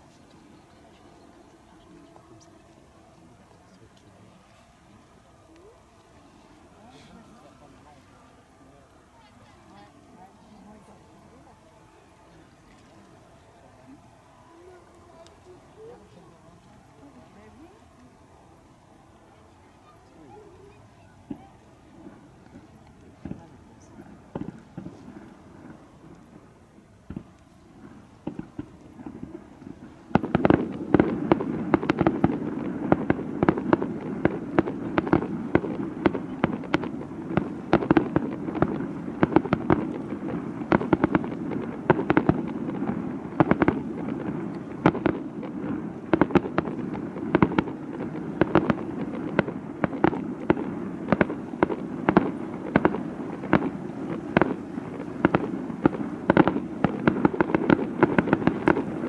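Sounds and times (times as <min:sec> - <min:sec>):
fireworks bangs: 0:19.3 - 0:59.0.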